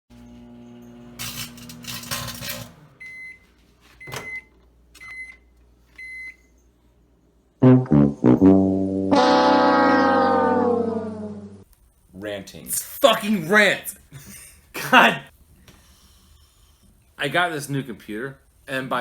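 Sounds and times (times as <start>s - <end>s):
microwave oven humming: 0.1s - 6.6s.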